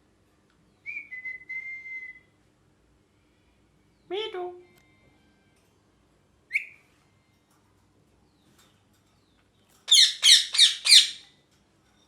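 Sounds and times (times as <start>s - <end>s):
parrot harsh screeches: 9.9s - 11.2s
parrot chirp: 9.9s - 11.3s.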